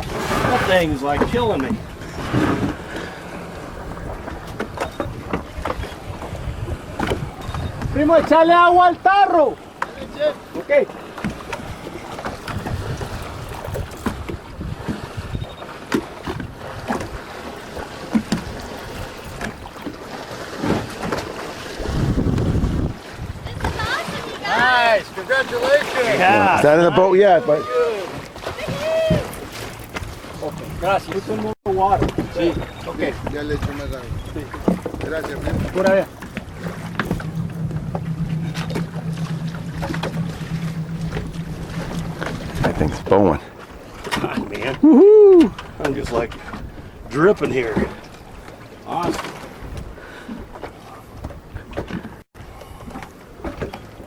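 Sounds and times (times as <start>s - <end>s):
wind on microphone: 0.0s - 8.1s, 11.2s - 15.6s, 20.8s - 24.2s, 31.9s - 47.8s
water lapping against boat hull: 0.0s - 54.0s.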